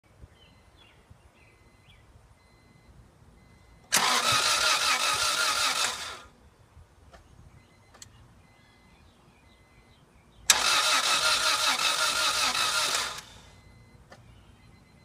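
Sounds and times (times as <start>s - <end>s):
engine cranking without starting: 3.8s - 6.3s, 10.5s - 13.7s.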